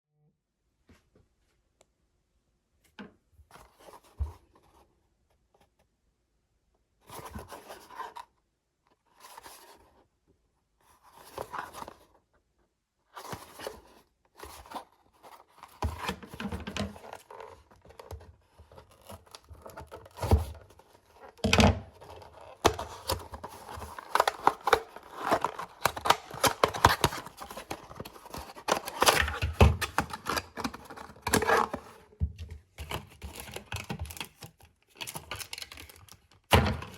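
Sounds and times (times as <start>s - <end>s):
packaging rustling: 14.4s - 36.9s
packaging tearing and crinkling: 21.3s - 32.0s, 35.0s - 36.9s.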